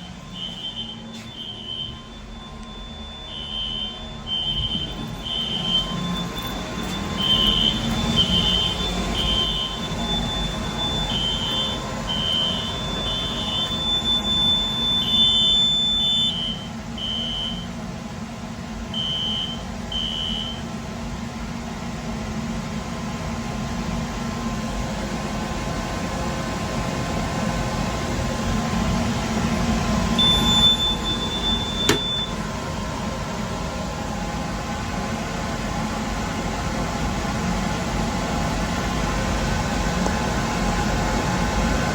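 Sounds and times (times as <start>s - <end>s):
steady higher alarm tone: 0.0s - 17.7s, 30.1s - 32.9s
fire alarm high beeps: 0.0s - 17.8s, 18.9s - 20.7s, 30.2s - 32.4s
steady low hum: 0.0s - 41.9s.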